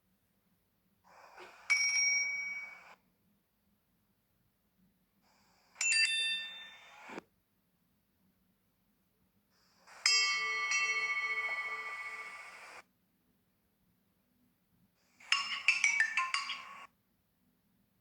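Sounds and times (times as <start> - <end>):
bell-like phone tones: 10.1 - 12.8, 15.3 - 16.9.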